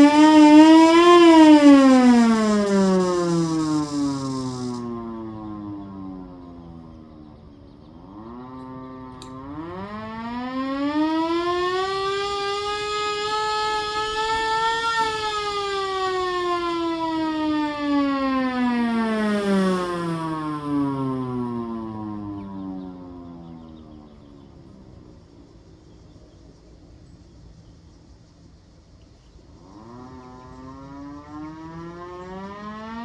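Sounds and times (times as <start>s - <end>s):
hand-crank siren wailing: 0.0s - 6.4s, 8.3s - 23.6s, 29.8s - 33.0s.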